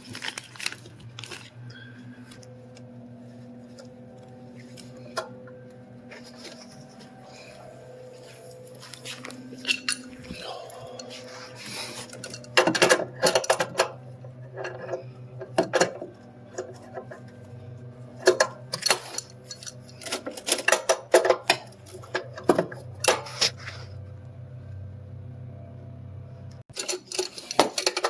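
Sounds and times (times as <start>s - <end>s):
steady low hum: 0.0s - 26.7s
metal tools clinking and rattling: 8.8s - 14.0s, 18.2s - 23.6s, 26.7s - 28.0s.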